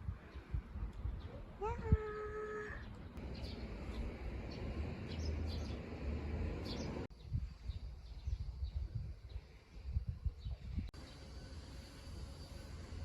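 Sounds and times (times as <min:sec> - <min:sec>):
wind rumble on microphone: 0:00.0 - 0:11.0
birds chirping: 0:02.7 - 0:09.4.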